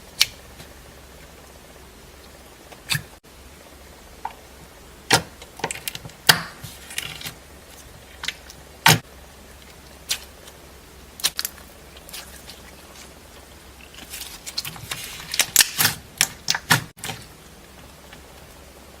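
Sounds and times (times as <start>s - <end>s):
slime crackle: 9.6s - 17.3s.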